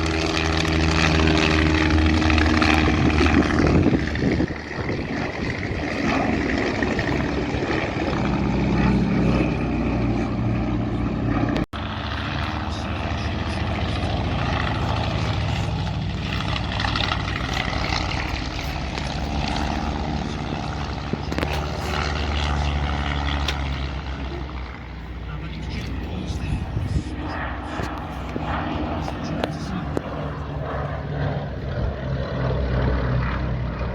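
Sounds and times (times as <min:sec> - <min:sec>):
propeller aircraft engine running: 0:00.0 - 0:33.9.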